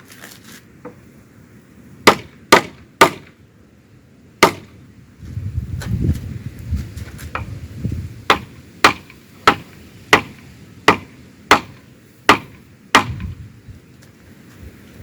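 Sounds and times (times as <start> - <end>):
hammer striking wood: 2.0 - 3.3, 4.4 - 4.7, 8.3 - 13.4.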